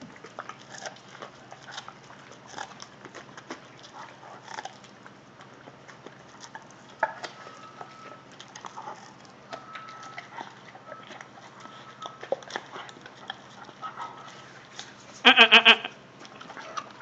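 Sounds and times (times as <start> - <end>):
dogs chewing corn: 0.0 - 17.0.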